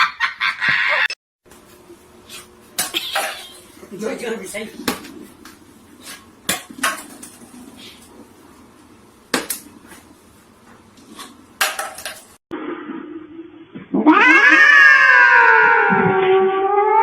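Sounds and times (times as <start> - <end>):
cat yowling: 14.0 - 17.0.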